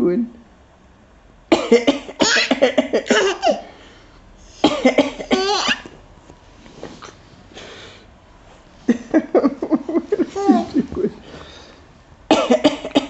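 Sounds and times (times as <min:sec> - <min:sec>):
adult coughing: 0:01.5 - 0:03.7, 0:04.6 - 0:05.6, 0:12.3 - 0:13.0
baby laughing: 0:02.2 - 0:03.7, 0:05.3 - 0:05.9, 0:10.1 - 0:11.1.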